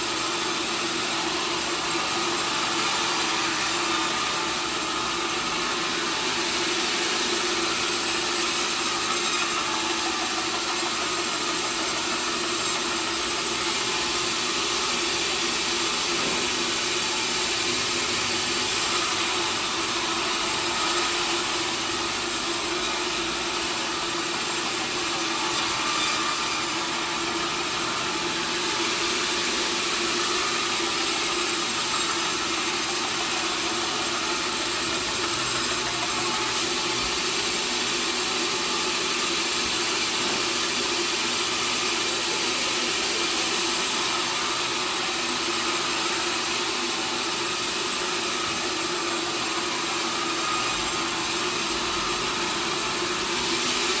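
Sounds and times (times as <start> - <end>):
sawmill machinery humming: 0.0 - 54.0.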